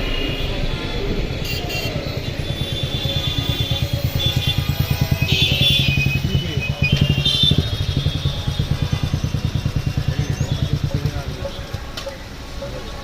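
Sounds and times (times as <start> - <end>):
small engine running: 1.3 - 11.9.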